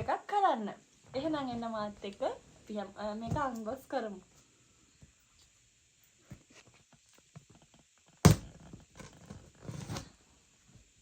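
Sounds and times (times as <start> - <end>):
loud thud: 8.3 - 8.6.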